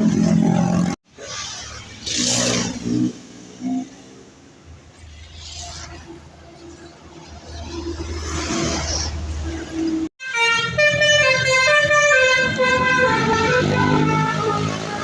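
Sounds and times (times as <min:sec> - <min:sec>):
multi-tone musical bus horn: 0:10.2 - 0:15.0.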